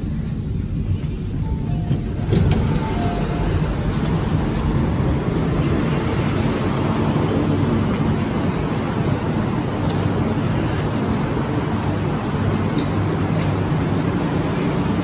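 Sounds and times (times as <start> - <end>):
electric train rumble and hiss: 0.0 - 15.0
two-note tone: 1.4 - 3.9.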